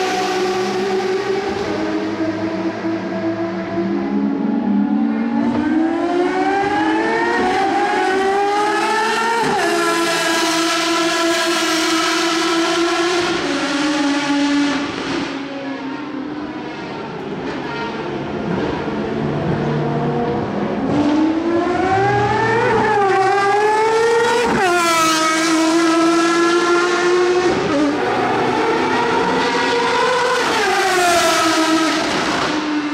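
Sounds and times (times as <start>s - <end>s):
car engine accelerating hard: 18.2s - 32.9s.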